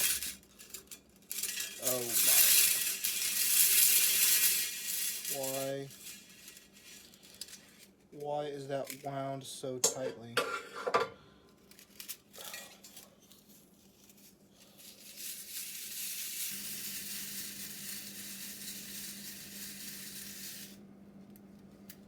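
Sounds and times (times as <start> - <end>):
welder arc crackling and sizzling: 0.0 - 10.2, 14.7 - 22.0
low welder hum: 0.0 - 10.4, 11.1 - 22.0.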